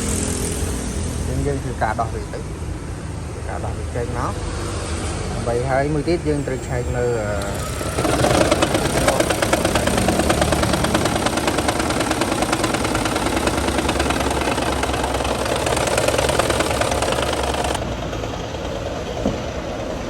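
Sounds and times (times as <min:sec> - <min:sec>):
car engine pulsing: 0:05.5 - 0:20.0.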